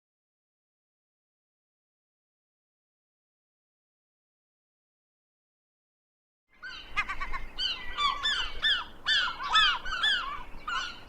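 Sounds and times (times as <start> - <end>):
flock of birds calling: 6.6 - 11.0.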